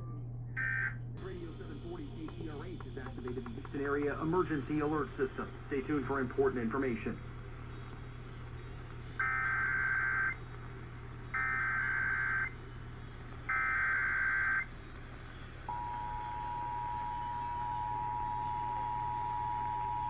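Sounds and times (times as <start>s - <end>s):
buzzy digital data tones: 0.6s - 20.0s
two-tone attention signal: 15.7s - 20.0s.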